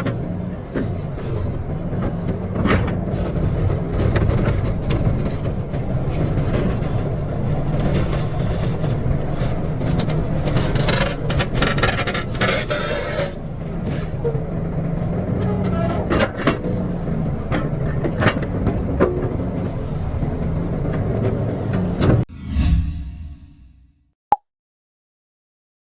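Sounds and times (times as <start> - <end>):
metallic clanking and scraping: 0.0 - 14.3
diesel engine running: 0.0 - 22.2.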